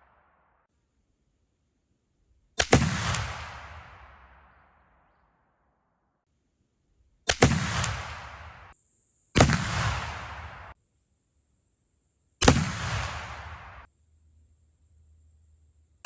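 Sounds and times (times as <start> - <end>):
rifle shots: 2.6 - 4.9, 7.3 - 8.7, 9.4 - 10.8, 12.4 - 13.9.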